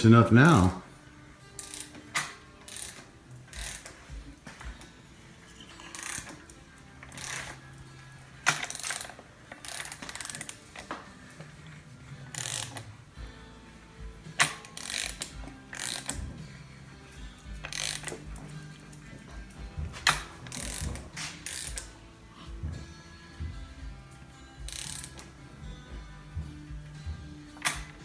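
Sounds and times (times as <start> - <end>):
socket ratchet clicking: 1.5 - 4.9, 5.6 - 7.6, 8.4 - 11.0, 12.3 - 12.9, 14.4 - 16.4, 17.2 - 22.0, 24.6 - 25.4, 27.6 - 28.0.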